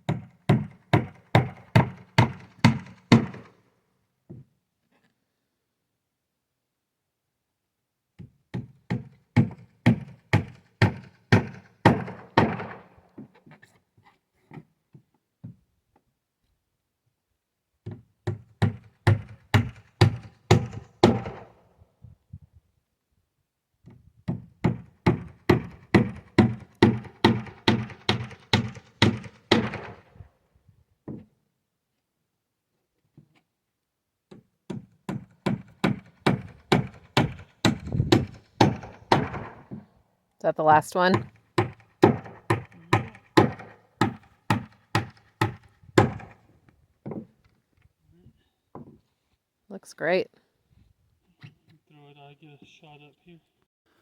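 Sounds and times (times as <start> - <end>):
hammer driving nails into wood: 0.1 - 3.5, 8.5 - 13.0, 17.9 - 21.5, 24.3 - 30.1, 34.3 - 39.8, 41.1 - 46.4.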